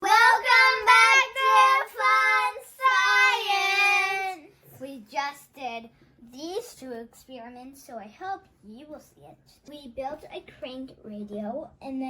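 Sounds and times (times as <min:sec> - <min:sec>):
child singing: 0:00.0 - 0:04.4
child speaking: 0:00.0 - 0:12.0.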